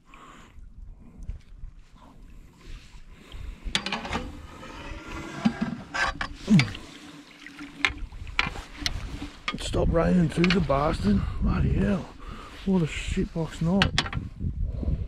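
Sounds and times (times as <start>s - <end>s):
water splashing and sloshing: 0.0s - 14.3s
short low grunt: 6.4s - 6.8s.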